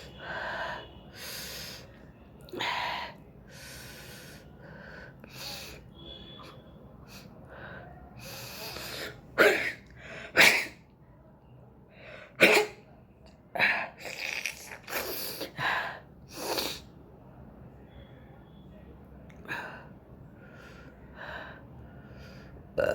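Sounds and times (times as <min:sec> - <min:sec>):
person sneezing: 0:08.8 - 0:10.8, 0:12.4 - 0:12.8.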